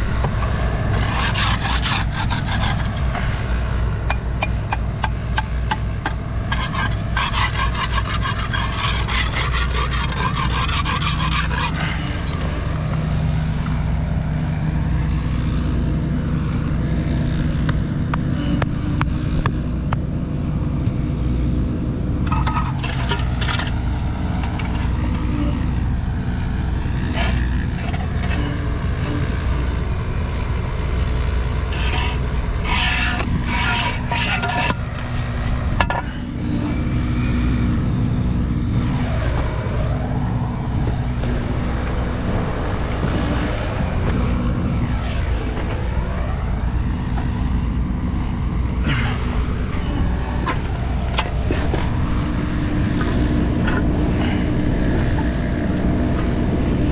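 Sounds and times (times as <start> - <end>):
low engine rumble: 0.0 - 56.9
scraping: 0.9 - 3.2, 6.5 - 12.0, 27.0 - 28.5, 31.6 - 35.9.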